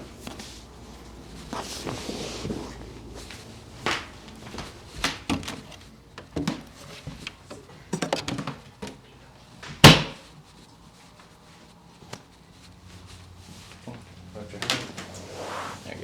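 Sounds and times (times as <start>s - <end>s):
heavy thud: 9.8s - 10.2s.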